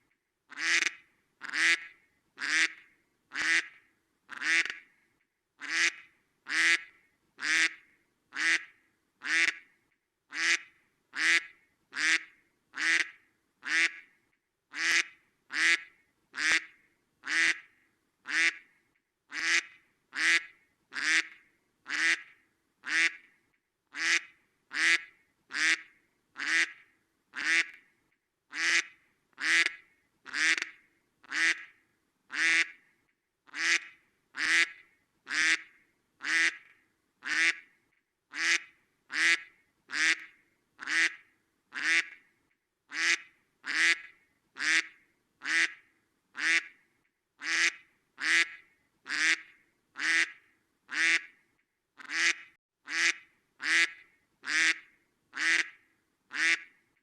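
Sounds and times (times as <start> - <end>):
duck quacking: 0.5 - 4.8, 5.6 - 7.8, 8.4 - 9.6, 10.3 - 14.0, 14.7 - 17.7, 18.3 - 18.6, 19.3 - 23.2, 23.9 - 26.8, 27.4 - 27.8, 28.5 - 31.7, 32.3 - 32.8, 33.5 - 36.6, 37.2 - 37.6, 38.3 - 41.2, 41.8 - 42.2, 42.9 - 45.8, 46.4 - 46.7, 47.4 - 51.3, 52.0 - 54.8, 55.4 - 56.7.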